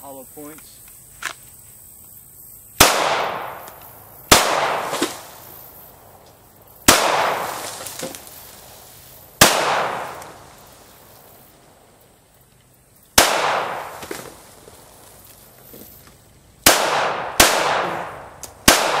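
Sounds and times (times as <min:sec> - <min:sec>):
pistol shots with echo: 0:02.8 - 0:03.6, 0:04.3 - 0:05.1, 0:06.8 - 0:07.6, 0:09.4 - 0:10.3, 0:13.2 - 0:14.0, 0:16.6 - 0:19.0.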